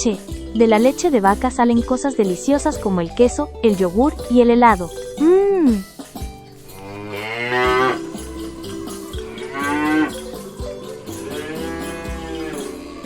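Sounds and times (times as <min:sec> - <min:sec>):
cow mooing: 0:06.8 - 0:08.2, 0:09.2 - 0:10.4, 0:11.2 - 0:13.0.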